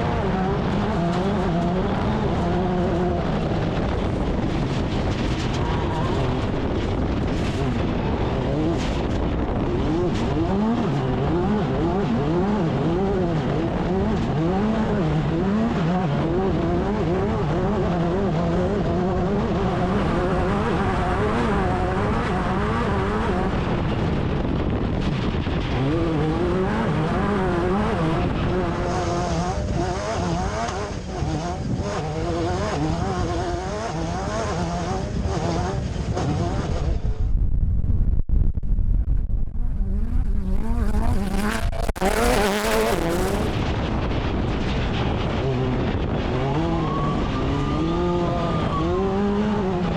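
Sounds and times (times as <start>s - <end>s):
race car engine revving hard: 7.4s - 24.0s, 25.7s - 36.9s, 39.6s - 43.6s.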